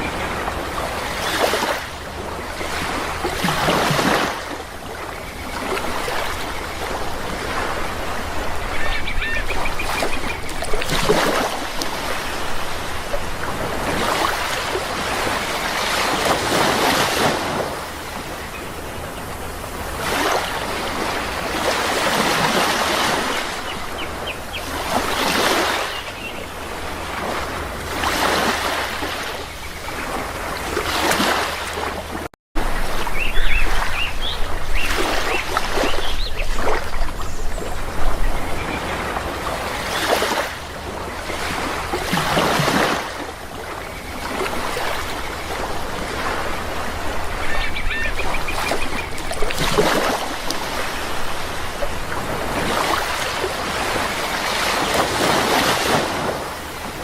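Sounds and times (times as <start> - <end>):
sea waves breaking: 0.0 - 57.0
faint bird calls: 8.4 - 10.7, 47.1 - 49.3.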